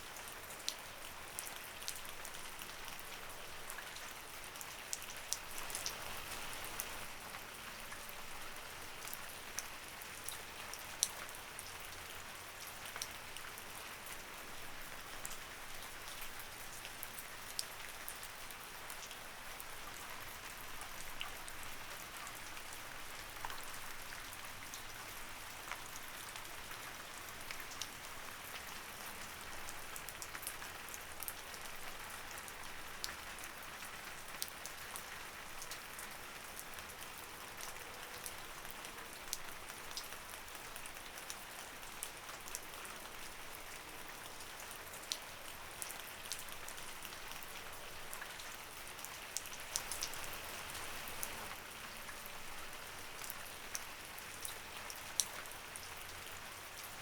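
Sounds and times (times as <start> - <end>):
light rain hiss: 0.0 - 57.0
raindrops dripping and tapping: 44.2 - 52.6.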